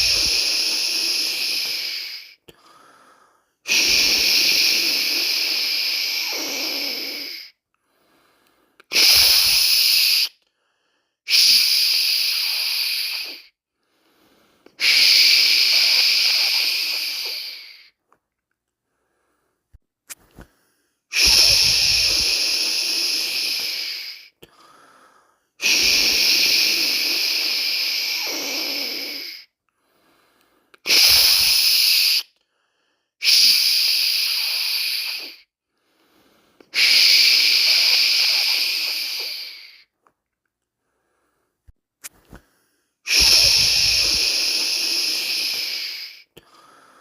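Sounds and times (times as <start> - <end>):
person shushing: 0.0 - 2.3, 14.8 - 17.9, 21.1 - 24.3, 43.1 - 46.2.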